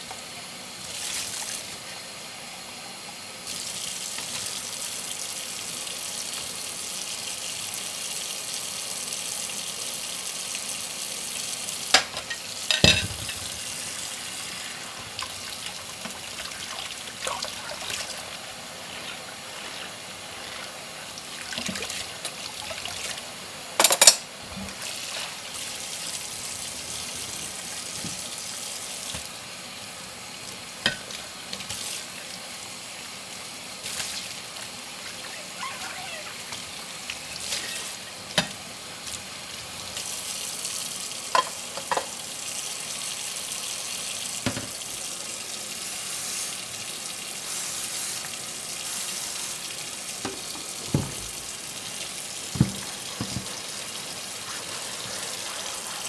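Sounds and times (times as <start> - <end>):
running water hissing: 0.0 - 56.0
dishes clinking: 12.0 - 13.6, 23.8 - 24.3, 41.3 - 42.2, 50.2 - 51.5, 52.5 - 53.6.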